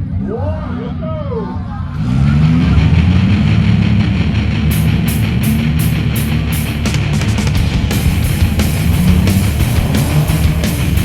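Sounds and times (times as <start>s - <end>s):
heavy metal rock music: 2.0s - 11.0s
drum and cymbal hits: 2.3s - 11.0s.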